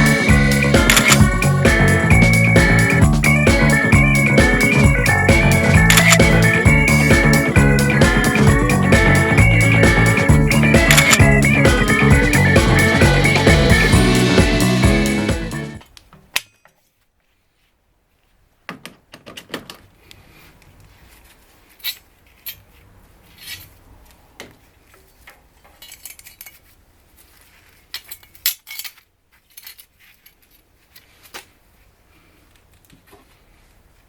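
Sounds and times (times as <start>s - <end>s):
metal parts and tools clinking: 0.8s - 1.3s, 5.8s - 6.5s, 10.8s - 11.3s, 21.7s - 22.8s, 25.6s - 26.7s, 27.9s - 30.7s.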